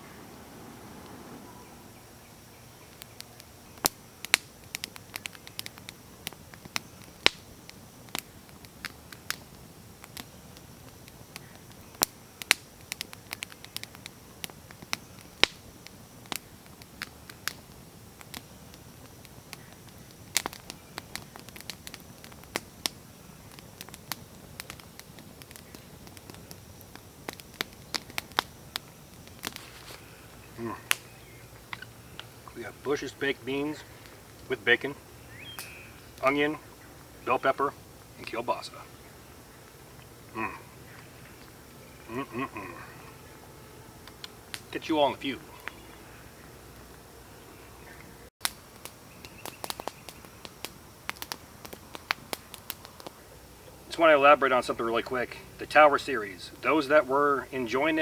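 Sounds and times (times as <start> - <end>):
campfire crackling and popping: 0.0 - 58.0
faint steady hiss: 0.0 - 58.0.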